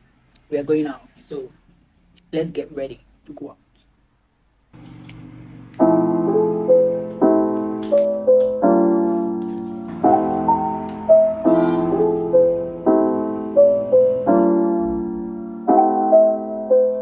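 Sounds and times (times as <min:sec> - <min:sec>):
soft piano piece: 0:04.8 - 0:17.0.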